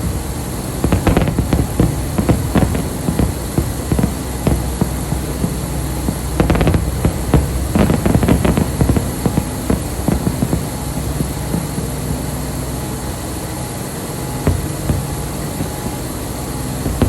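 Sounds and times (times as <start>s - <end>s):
fireworks crackling and popping: 0.0s - 17.0s
steady low rumble: 0.0s - 17.0s.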